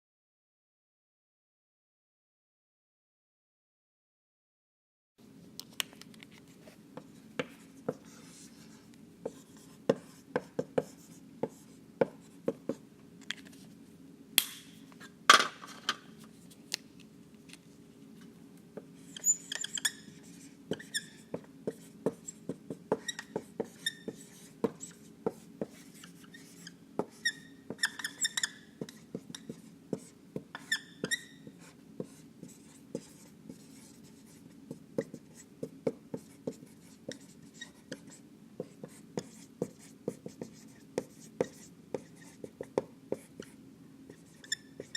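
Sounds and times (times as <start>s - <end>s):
marker writing on whiteboard: 7.0s - 12.8s, 19.0s - 44.9s
high-pitched marker squeaks: 19.1s - 21.3s, 23.0s - 24.3s, 26.0s - 29.5s, 30.6s - 31.6s, 44.1s - 44.9s.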